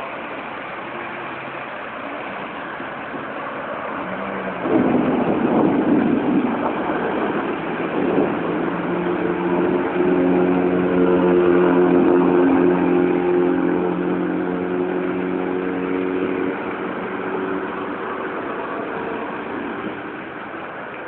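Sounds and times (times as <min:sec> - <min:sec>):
steady rain hiss: 0:00.0 - 0:10.9, 0:16.2 - 0:21.0
engine hum: 0:00.0 - 0:21.0
traffic: 0:00.0 - 0:21.0
vehicle passing on wet road: 0:00.0 - 0:21.0.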